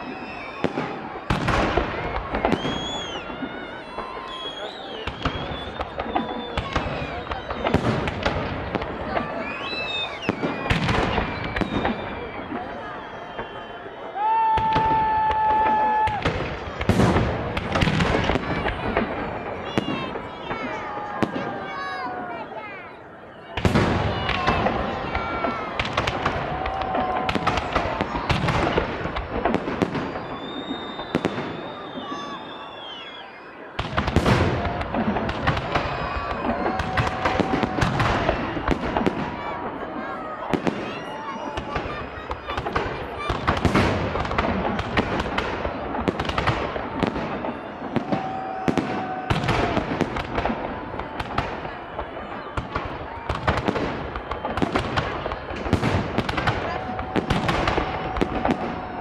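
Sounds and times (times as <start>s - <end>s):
fireworks bangs and crackles: 0.0s - 59.0s.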